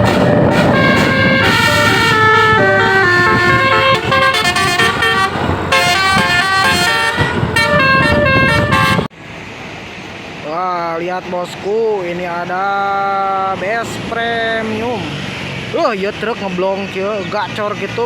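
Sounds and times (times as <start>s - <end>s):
multi-tone air horn tune: 0.0s - 9.1s.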